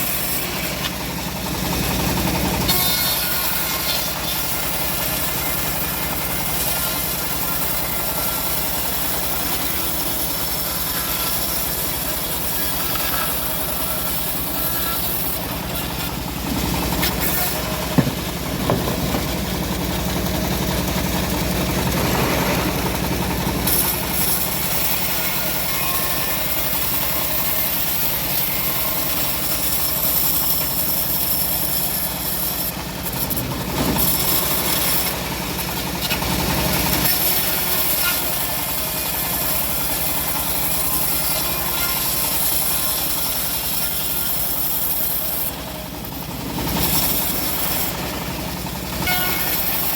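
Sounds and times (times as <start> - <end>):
sawmill engine running: 0.0 - 49.9
sharp knock: 17.8 - 19.6.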